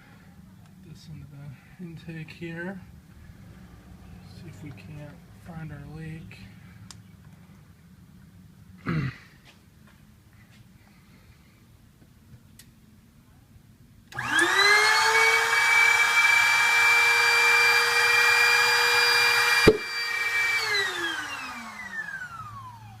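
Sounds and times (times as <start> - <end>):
electric air pump whining: 14.1 - 23.0.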